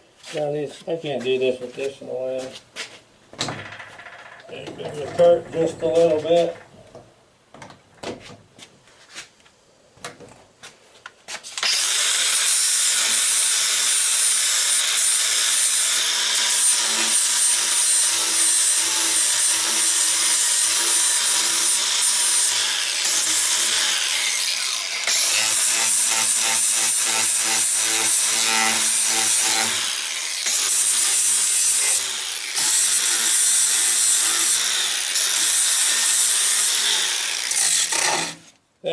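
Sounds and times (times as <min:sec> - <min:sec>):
power tool on wood: 0:11.6 - 0:38.6.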